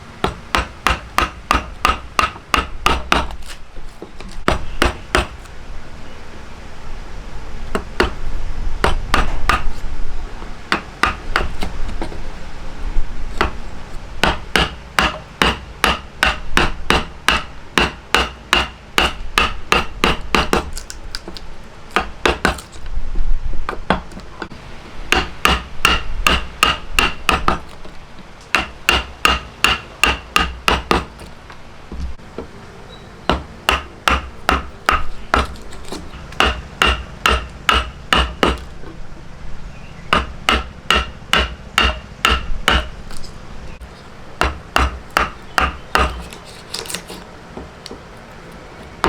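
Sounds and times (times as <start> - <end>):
hammer blows ringing: 36.3 - 38.7, 40.1 - 42.9.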